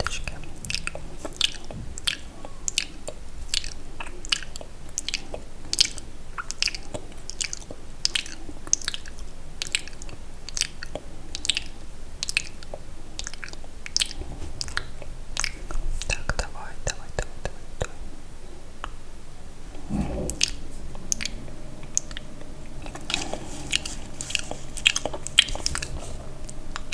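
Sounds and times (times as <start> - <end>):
wet mouth smacks and clicks: 0.0 - 16.5.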